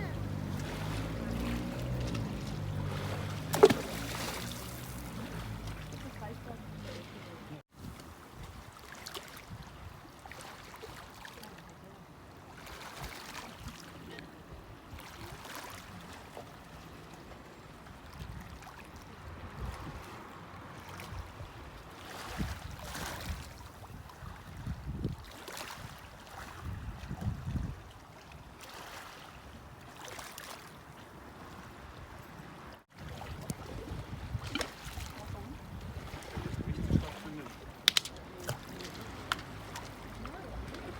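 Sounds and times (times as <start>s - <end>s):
wind rumbling on microphone: 0.0s - 8.8s, 18.1s - 28.6s, 31.7s - 40.9s
waves breaking on beach: 0.0s - 17.1s, 28.0s - 40.9s.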